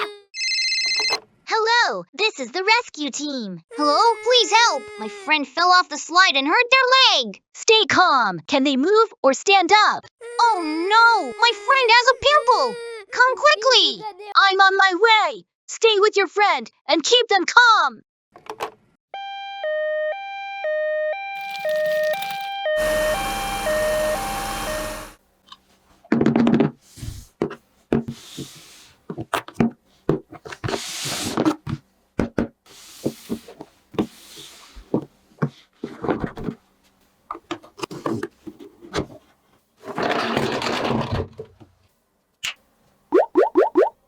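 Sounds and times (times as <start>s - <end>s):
two-tone siren: 19.1s - 25.2s
toy parts and packaging handled: 21.4s - 23.3s.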